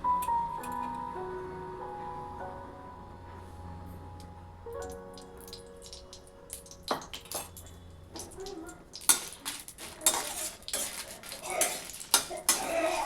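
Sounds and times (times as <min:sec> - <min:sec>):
metal utensils clinking on cookware: 0:05.2 - 0:13.0.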